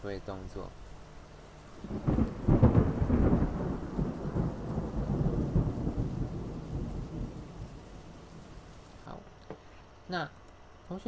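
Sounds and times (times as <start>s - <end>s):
rain: 0.0s - 9.3s
deep rumble of thunder: 1.8s - 8.9s.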